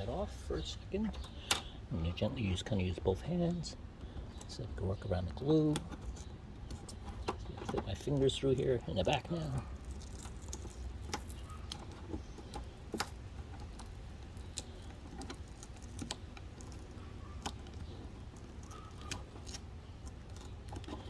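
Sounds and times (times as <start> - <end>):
steady low hum: 0.0 - 21.0
plastic clicks and creaks: 1.0 - 1.7, 5.4 - 21.0.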